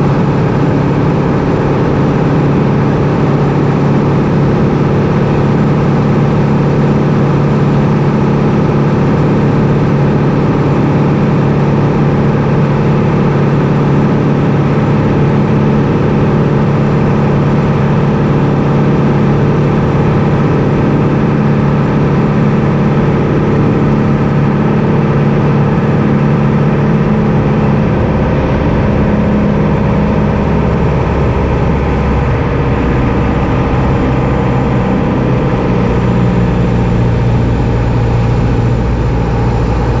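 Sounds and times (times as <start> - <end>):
light aircraft engine drone: 0.0 - 40.0.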